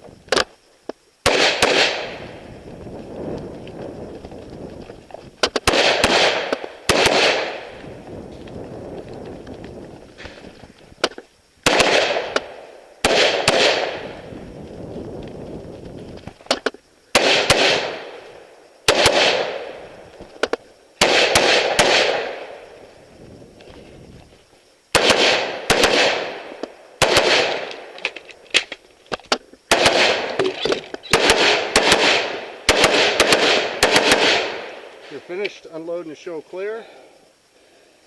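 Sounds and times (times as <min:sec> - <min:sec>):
rifle shots with echo: 0:01.2 - 0:02.2, 0:05.6 - 0:07.7, 0:11.6 - 0:14.2, 0:17.1 - 0:18.2, 0:18.9 - 0:19.8, 0:21.0 - 0:22.6, 0:24.9 - 0:27.9, 0:29.7 - 0:34.9.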